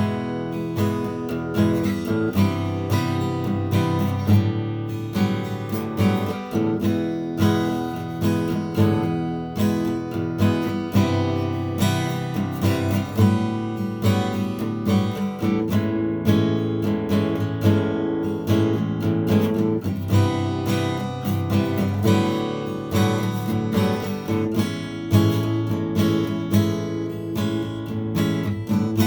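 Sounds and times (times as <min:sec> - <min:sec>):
acoustic guitar strumming chords: 0:00.0 - 0:29.0.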